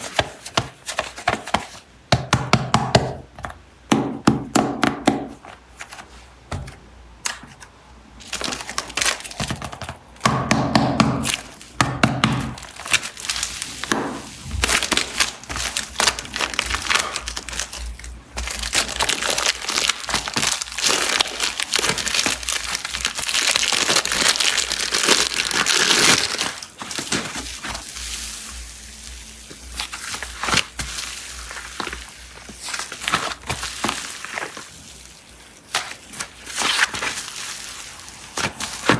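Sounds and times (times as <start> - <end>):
plastic packaging crinkling: 8.2 - 10.2, 11.2 - 11.8, 12.4 - 38.9.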